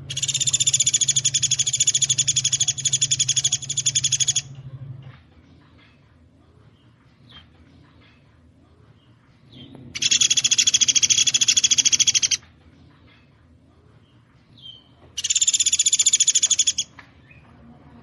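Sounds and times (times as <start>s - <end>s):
woodpecker rattling trills: 0.0s - 4.5s, 10.0s - 12.4s, 15.2s - 16.9s.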